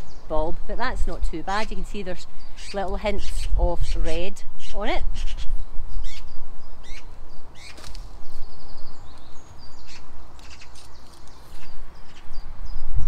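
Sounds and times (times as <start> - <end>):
small birds chirping: 0.0 - 13.0.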